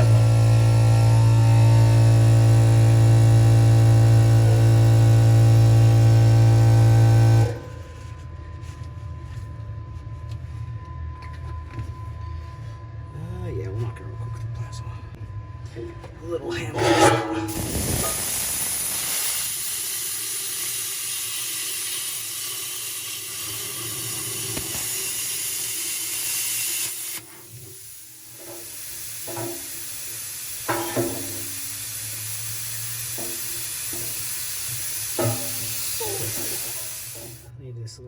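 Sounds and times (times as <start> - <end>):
plasma cutter hissing: 0.0 - 7.5, 16.8 - 37.5.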